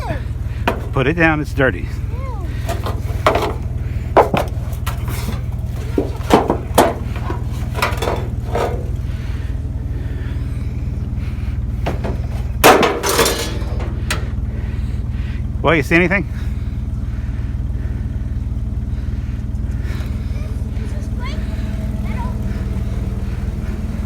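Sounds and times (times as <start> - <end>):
junk knocking and clanking: 0.0 - 24.0
low engine hum: 0.0 - 24.0
clattering crash: 0.5 - 1.3, 2.5 - 9.3, 11.7 - 14.5.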